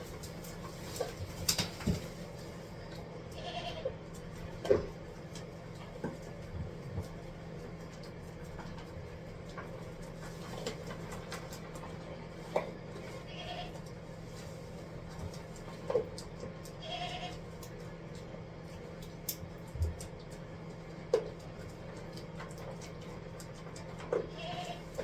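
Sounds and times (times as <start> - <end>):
steady low hum: 0.0 - 25.0
goats bleating: 3.3 - 4.0, 13.2 - 13.8, 16.8 - 17.4, 24.2 - 25.0.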